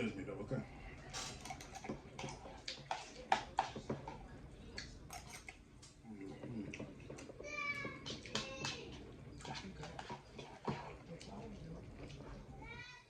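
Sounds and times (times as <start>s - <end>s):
chewing crunches: 1.1s - 8.3s
utensil clicking on bowl: 1.4s - 6.0s, 6.7s - 11.4s.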